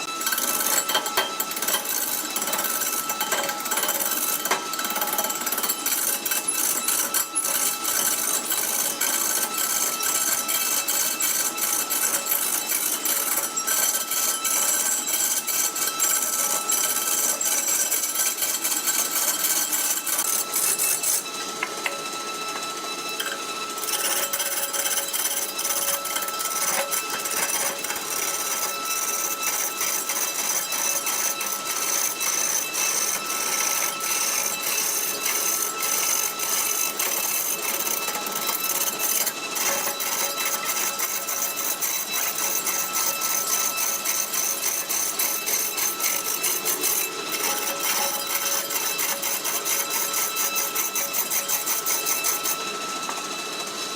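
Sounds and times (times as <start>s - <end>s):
tool cutting spinning wood: 0.0s - 53.9s
wood lathe running: 0.0s - 53.9s.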